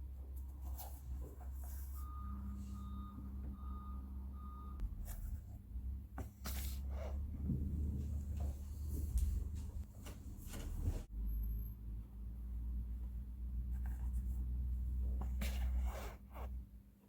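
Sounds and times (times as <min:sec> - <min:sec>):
steady low hum: 0:00.0 - 0:16.7
appliance electronic beeps: 0:02.0 - 0:04.8.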